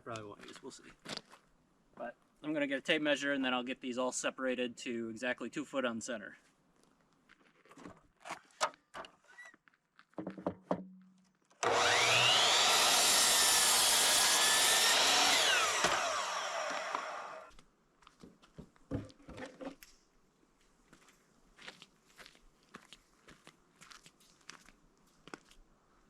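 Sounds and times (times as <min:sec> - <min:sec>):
power saw cutting wood: 0:11.6 - 0:17.5.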